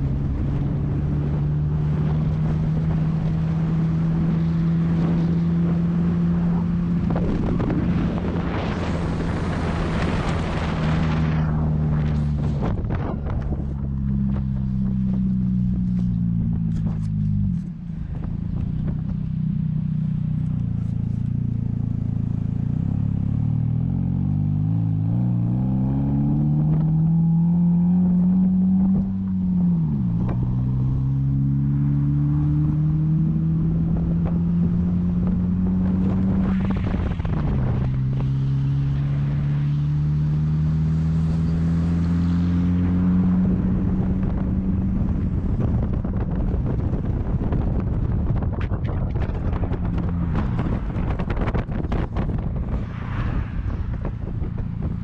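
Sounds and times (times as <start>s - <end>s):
engine accelerating through gears: 0.0s - 52.8s.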